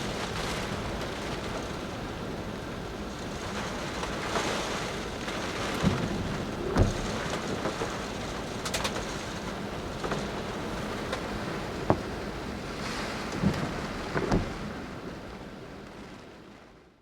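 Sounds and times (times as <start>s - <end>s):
gale wind buffeting microphone: 0.0s - 16.1s
rough lake waves: 0.0s - 16.6s
heavy thumps: 11.8s - 12.4s, 13.4s - 14.6s.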